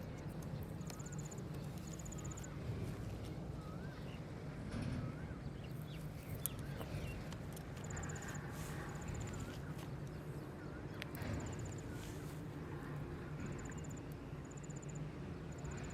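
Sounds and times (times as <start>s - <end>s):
steady low rumble: 0.0s - 15.9s
birds whistling: 0.8s - 12.5s.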